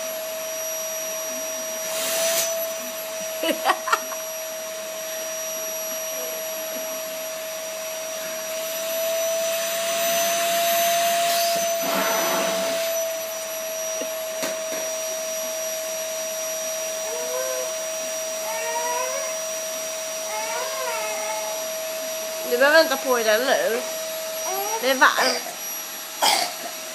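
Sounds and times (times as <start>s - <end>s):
vacuum cleaner running: 0.0s - 26.9s.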